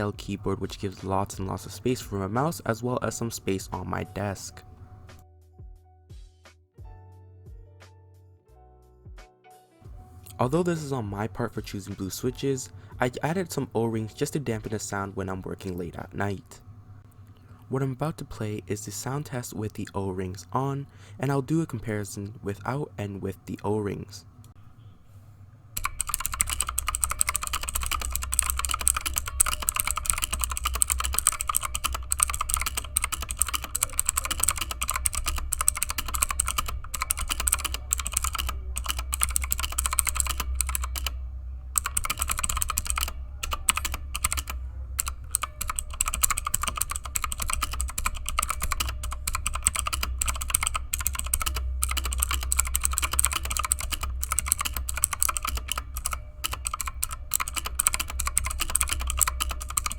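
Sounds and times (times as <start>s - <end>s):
fast typing on clicky keyboard: 0.0s - 5.2s, 10.3s - 16.0s, 25.8s - 59.9s
steady low hum: 0.0s - 5.3s, 9.9s - 59.9s.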